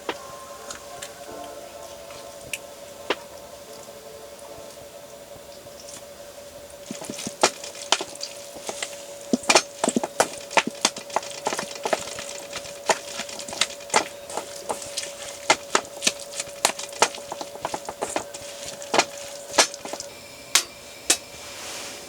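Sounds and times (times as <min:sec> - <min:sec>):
steady faint hum: 0:00.0 - 0:22.0
wood crackling and snapping: 0:05.6 - 0:21.3.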